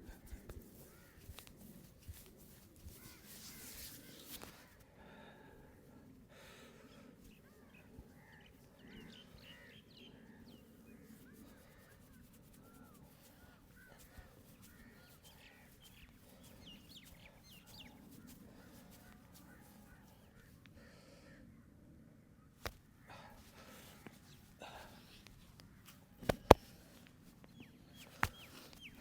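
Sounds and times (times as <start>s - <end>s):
birds chirping: 6.9s - 21.6s, 22.4s - 29.0s.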